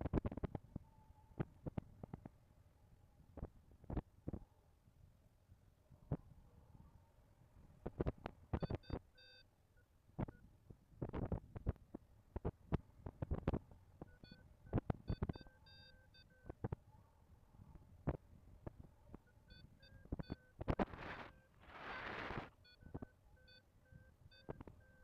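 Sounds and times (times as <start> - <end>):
variometer beeping: 8.6 - 9.4, 14.0 - 16.6.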